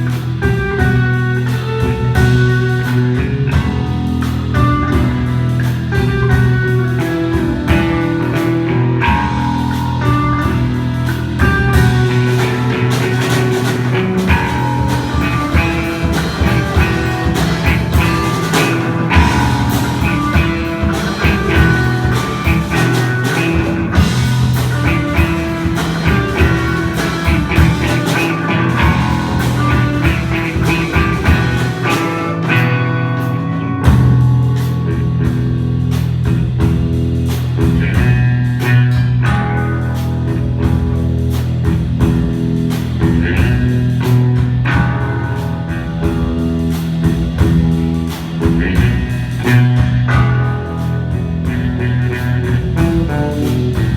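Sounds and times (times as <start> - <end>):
rock band playing: 0.0 - 53.9.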